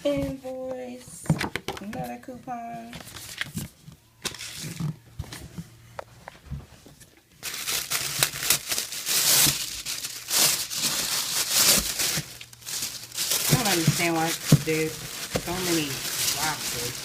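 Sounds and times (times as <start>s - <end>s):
handling rustles: 2.9s - 17.0s
packaging crinkling and tearing: 3.0s - 5.0s, 7.4s - 17.0s.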